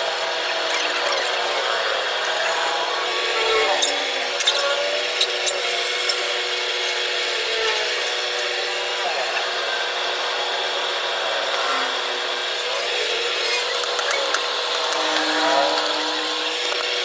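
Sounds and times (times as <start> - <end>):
power tool running: 0.0 - 17.0.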